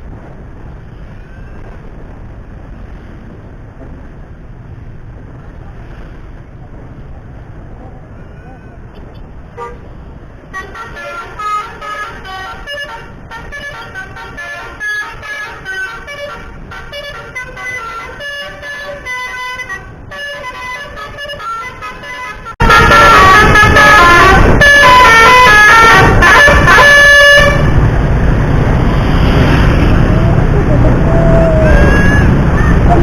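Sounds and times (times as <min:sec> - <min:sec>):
bus melody horn playing tunes: 0:09.6 - 0:09.9, 0:10.5 - 0:27.9, 0:31.7 - 0:33.0
loud steady noise: 0:09.6 - 0:33.0.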